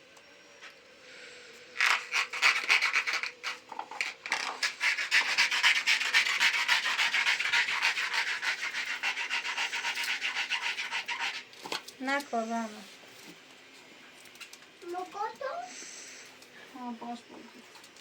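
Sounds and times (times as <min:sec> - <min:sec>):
hand sanding rasping strokes: 0:01.8 - 0:03.6, 0:04.5 - 0:11.5.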